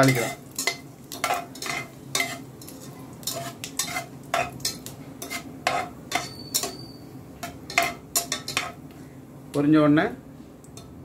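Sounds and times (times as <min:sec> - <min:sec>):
metal spoon scraping cooker: 0:00.0 - 0:08.8
spices sizzling in hot oil: 0:00.0 - 0:09.1.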